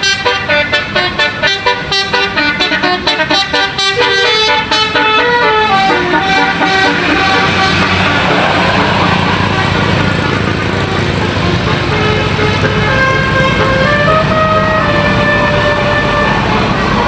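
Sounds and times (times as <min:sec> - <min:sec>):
loud engine rumble: 0:00.0 - 0:17.0
musical bus horn tune: 0:00.0 - 0:17.0.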